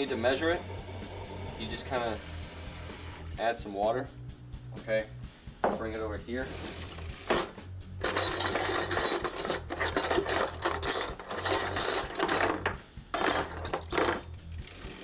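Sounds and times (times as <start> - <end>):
spoon scraping inside a bowl: 7.3 - 12.6, 13.2 - 14.2.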